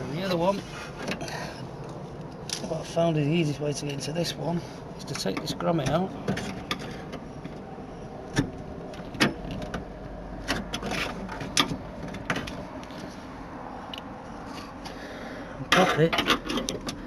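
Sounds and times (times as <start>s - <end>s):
sharp clicks and light knocks: 1.0s - 2.8s, 5.0s - 7.6s, 8.3s - 13.1s, 15.7s - 17.0s.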